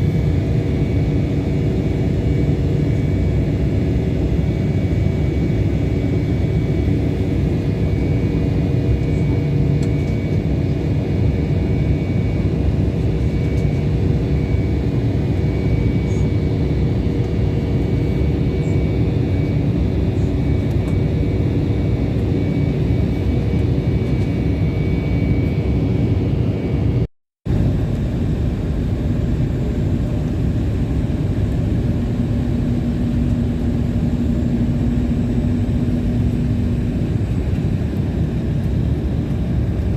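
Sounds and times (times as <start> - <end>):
constant hums: 0.0 - 39.9
engines and airflow rushing: 0.0 - 39.9.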